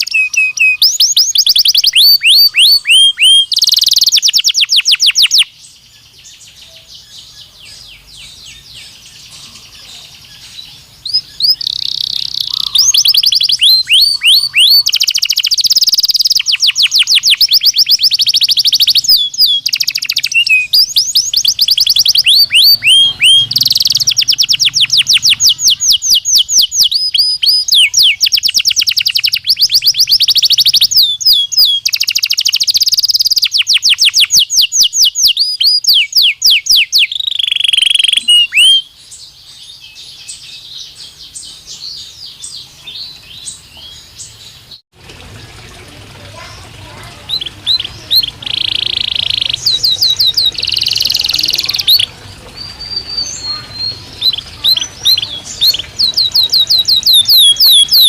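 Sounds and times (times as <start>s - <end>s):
canary singing rapid trills: 0.0s - 44.8s, 46.4s - 58.0s.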